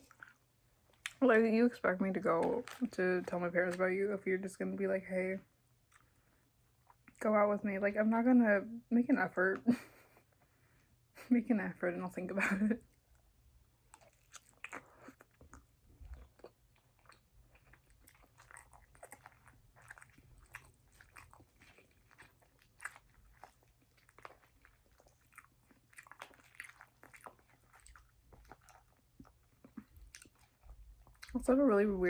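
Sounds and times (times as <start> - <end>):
person chewing: 0.0 - 1.2, 5.8 - 7.2, 12.9 - 31.4.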